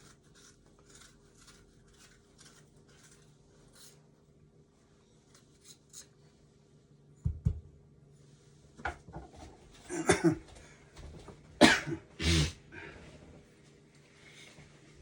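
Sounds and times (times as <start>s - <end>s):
person coughing: 9.9s - 10.5s, 11.6s - 12.6s.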